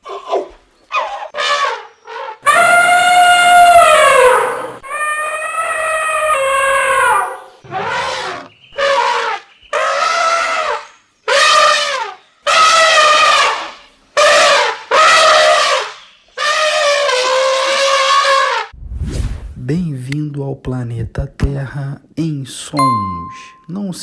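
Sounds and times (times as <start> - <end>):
elephants trumpeting: 2.5 - 10.7.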